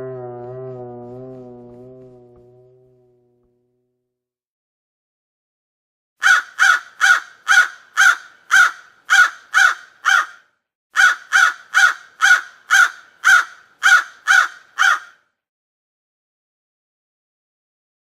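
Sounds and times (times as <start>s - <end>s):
crow cawing: 6.2s - 15.3s.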